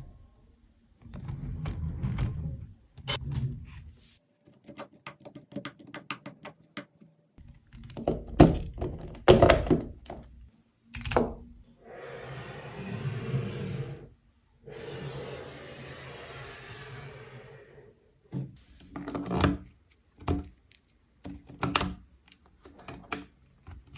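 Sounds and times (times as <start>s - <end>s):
plastic toy parts clicking and rattling: 19.1s - 23.9s.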